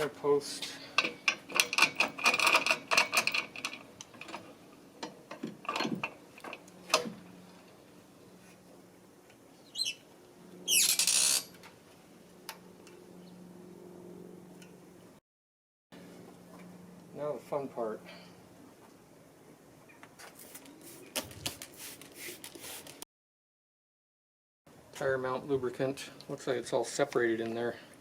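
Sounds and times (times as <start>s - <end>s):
metal parts clinking and clanking: 1.0s - 7.1s
high rising squeak: 10.6s - 11.6s.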